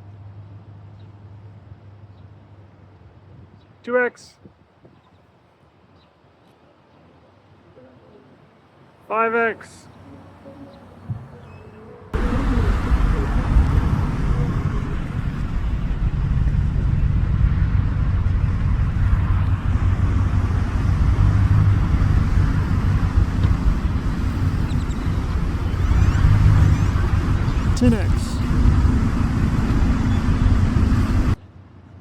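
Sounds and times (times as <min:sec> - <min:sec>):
low outdoor rumble: 0:09.9 - 0:32.0.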